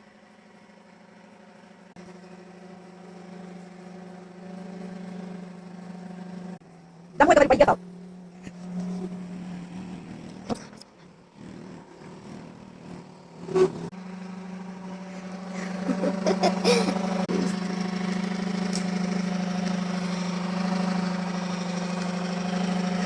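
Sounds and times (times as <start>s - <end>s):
vacuum cleaner motor humming: 2.0s - 7.5s, 14.0s - 23.0s.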